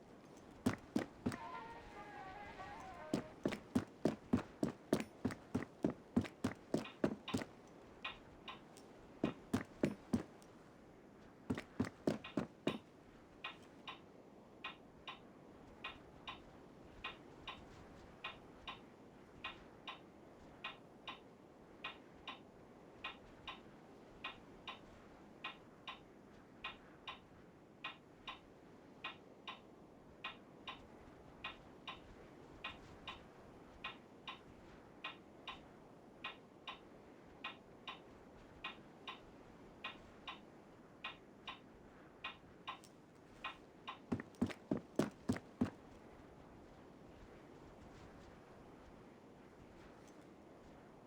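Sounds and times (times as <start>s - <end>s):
light ticking in pairs: 3.0s - 10.5s.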